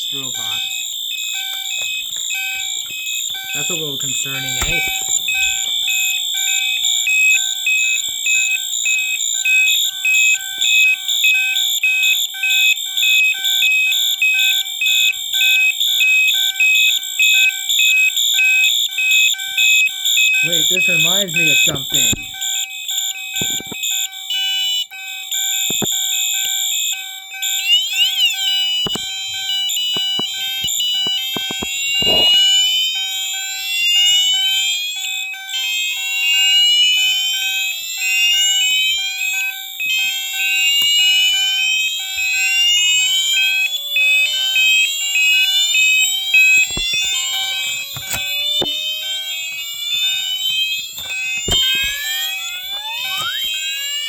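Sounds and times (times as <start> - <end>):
fire alarm sounders pulsing tone: 0.0 - 54.0
gliding high alarm tones: 0.0 - 54.0
clicks: 1.4 - 8.5, 21.6 - 22.4, 23.4 - 23.9, 25.7 - 26.6, 28.1 - 32.9, 40.8 - 41.2, 46.4 - 48.9, 49.5 - 53.6.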